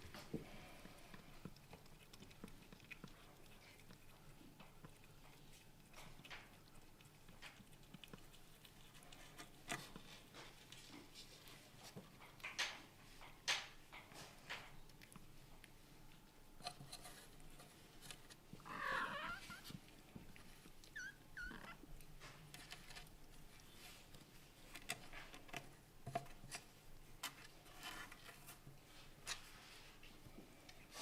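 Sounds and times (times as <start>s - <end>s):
kitten calling out: 18.6s - 19.6s
kitten squeaking: 18.6s - 19.7s, 20.8s - 21.8s.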